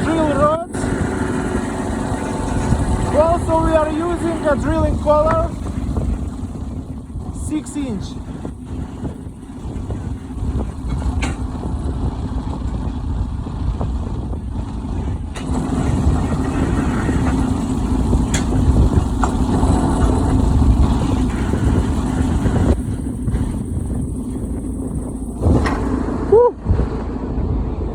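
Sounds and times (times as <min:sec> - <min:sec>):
diesel engine rumbling: 0:00.0 - 0:27.9.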